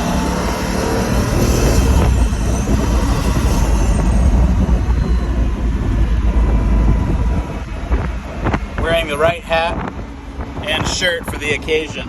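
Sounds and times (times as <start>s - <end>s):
air rushing: 0.0s - 11.4s
car engine low rumble: 0.0s - 12.0s.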